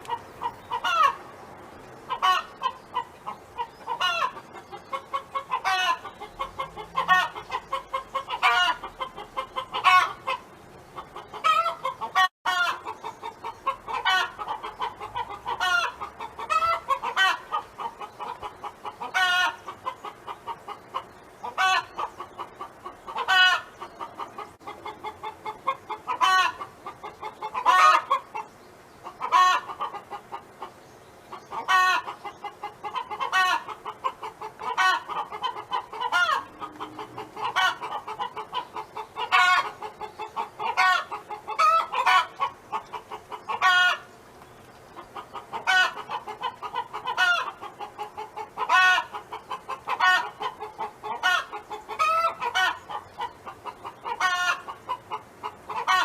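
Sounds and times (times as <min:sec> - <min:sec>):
hen clucking: 0:00.0 - 0:01.3, 0:02.1 - 0:56.0
hen calling: 0:02.1 - 0:44.1.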